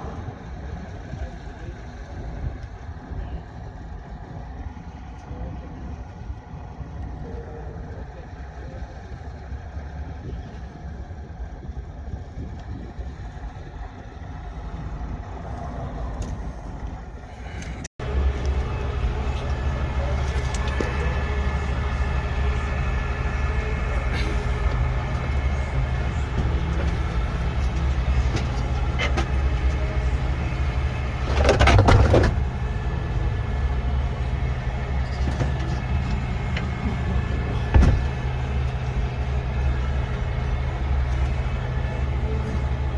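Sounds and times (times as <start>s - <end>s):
diesel truck engine idling: 0.0s - 42.9s.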